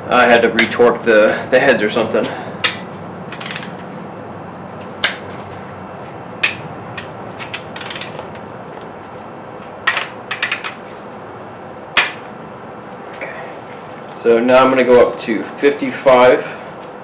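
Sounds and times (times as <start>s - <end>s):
hand tools clicking and clinking: 2.6s - 3.8s, 6.4s - 8.2s.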